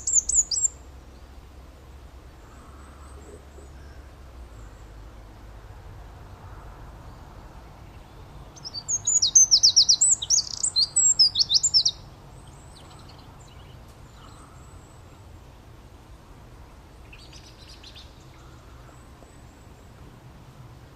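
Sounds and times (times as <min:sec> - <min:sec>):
small songbird singing: 0:00.0 - 0:01.5, 0:06.3 - 0:20.1.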